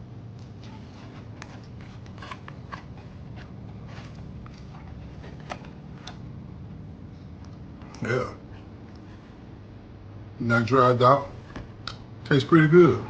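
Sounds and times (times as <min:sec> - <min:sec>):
low steady hum: 0:00.0 - 0:13.0
man chewing food: 0:00.3 - 0:09.6.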